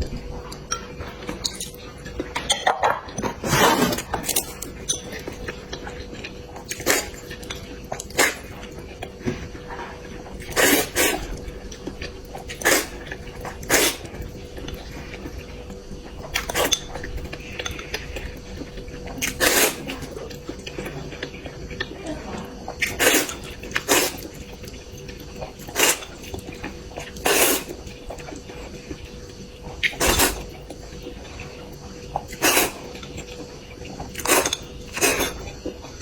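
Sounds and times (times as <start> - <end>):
dishes and cutlery clinking: 0.5 - 5.6
loud slurps: 10.5 - 11.3, 27.2 - 27.7.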